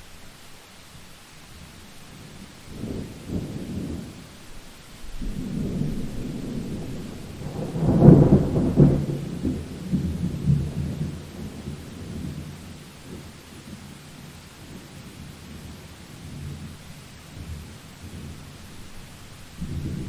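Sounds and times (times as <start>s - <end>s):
steady rain: 0.0s - 20.0s
thunder rumbling: 5.1s - 13.2s, 17.4s - 20.0s.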